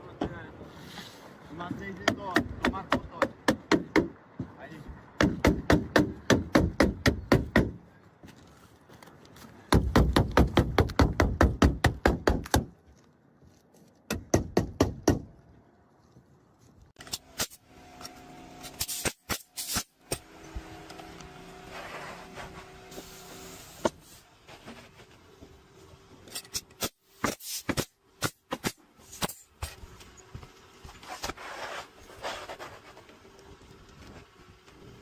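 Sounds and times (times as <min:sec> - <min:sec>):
hiss-like noise: 0:21.7 - 0:24.8.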